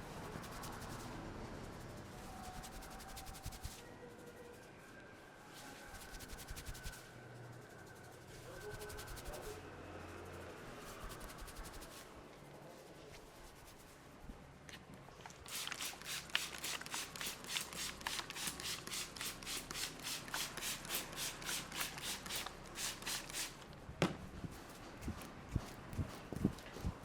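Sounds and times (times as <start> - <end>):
hands rubbing hair and scalp: 2.3 - 3.8, 5.7 - 7.0, 8.5 - 9.6, 10.7 - 12.1, 15.4 - 23.7.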